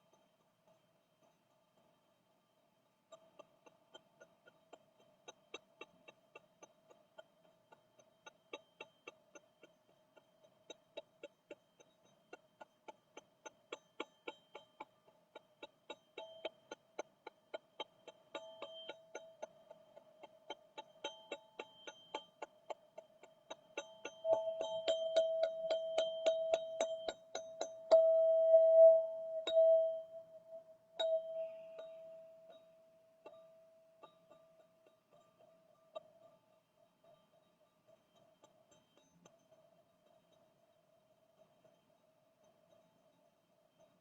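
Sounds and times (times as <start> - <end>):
steady soft ringing tone: 0.0 - 44.0
metal chime tube struck with mallet: 24.3 - 32.7.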